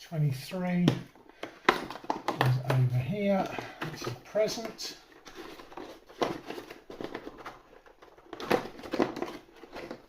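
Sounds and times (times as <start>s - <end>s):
plastic pieces tapping and clicking: 0.9s - 4.7s
packaging crinkling: 1.3s - 10.0s.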